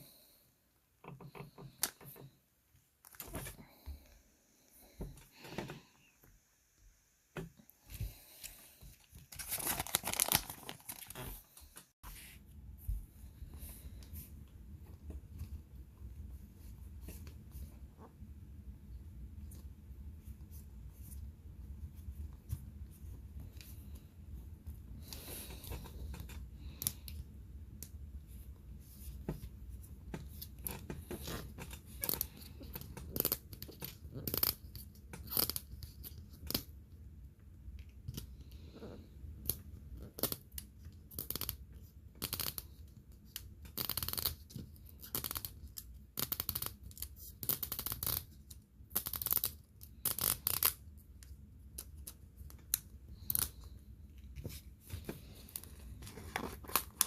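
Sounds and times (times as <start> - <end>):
plastic wrap tearing and crinkling: 9.2 - 11.4.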